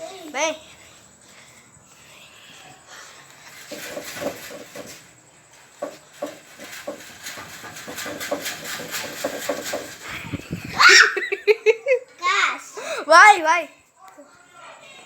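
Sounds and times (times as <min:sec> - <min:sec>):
loud high wavering cry: 0:10.5 - 0:11.4.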